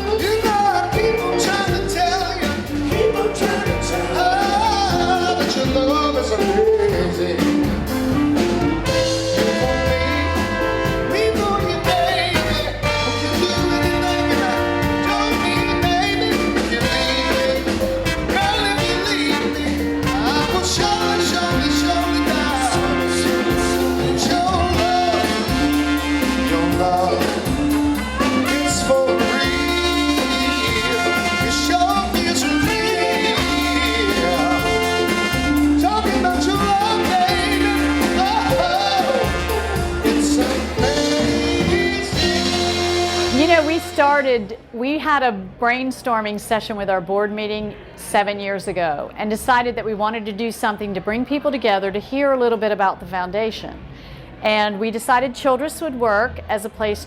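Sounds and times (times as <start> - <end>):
jazz band music: 0.0 - 45.6.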